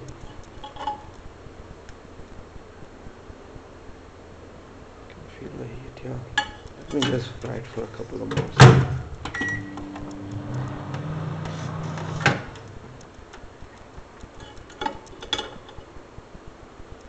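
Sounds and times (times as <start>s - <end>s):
microwave humming: 6.4s - 13.4s
microwave stopping click: 8.4s - 12.9s
microwave beep: 9.3s - 12.6s.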